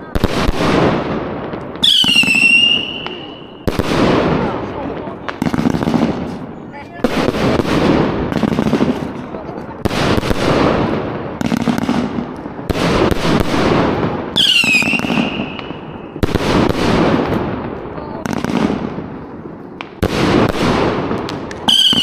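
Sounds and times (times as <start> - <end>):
firework bangs with crackling: 0.0 - 22.0
whistling firework shell: 1.8 - 3.6, 14.4 - 15.8, 21.7 - 22.0.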